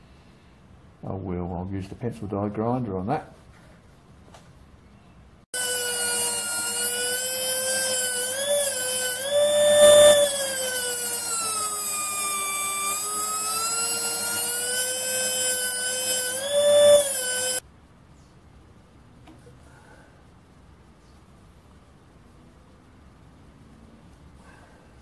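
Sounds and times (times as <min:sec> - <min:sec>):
die grinder whining: 0:05.6 - 0:17.6.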